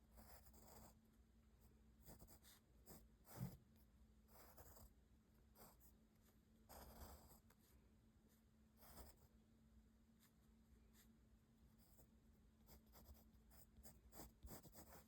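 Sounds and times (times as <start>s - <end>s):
pencil scratching on paper: 0.0s - 1.0s, 2.0s - 3.6s, 4.3s - 9.3s, 11.8s - 15.0s.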